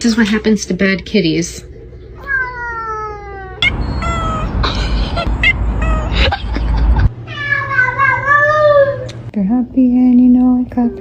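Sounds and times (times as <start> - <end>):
cat meowing: 2.2 - 6.2, 7.3 - 9.1
steady low rumbling: 3.6 - 7.3.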